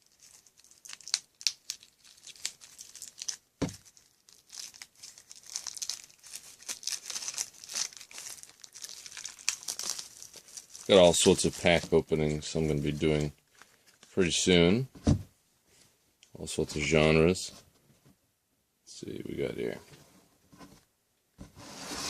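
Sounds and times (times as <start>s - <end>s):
plastic wrapping crinkling and tearing: 0.0s - 14.2s.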